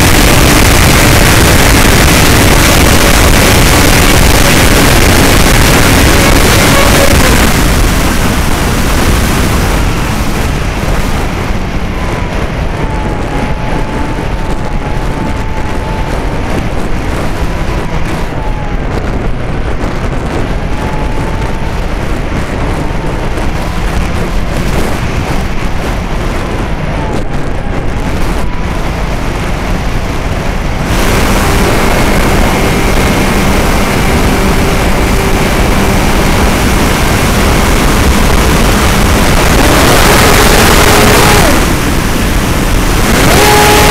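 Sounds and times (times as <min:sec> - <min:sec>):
wind buffeting microphone: 0:00.0 - 0:43.9
model plane motor whine: 0:30.8 - 0:43.9.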